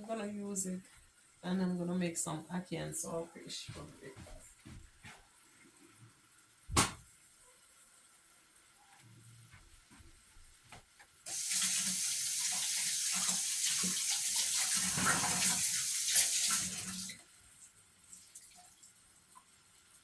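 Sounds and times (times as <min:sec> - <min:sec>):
meat sizzling in a pot: 0:11.3 - 0:17.2.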